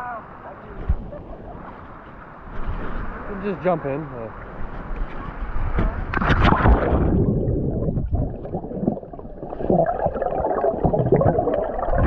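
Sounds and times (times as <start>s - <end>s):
underwater gurgling and bubbling: 6.0s - 12.0s.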